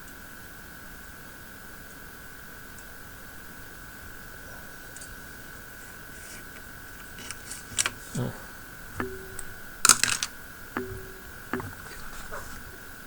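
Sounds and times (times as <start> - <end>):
steady high-pitched whine: 0.0 - 13.0
hand tools and wire clicking: 6.2 - 8.2, 8.9 - 12.8.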